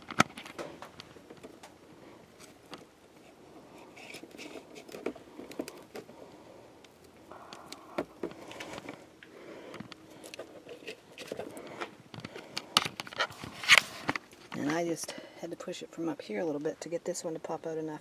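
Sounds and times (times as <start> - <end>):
plastic and metal parts rattling: 0.0 - 6.2, 9.7 - 14.7.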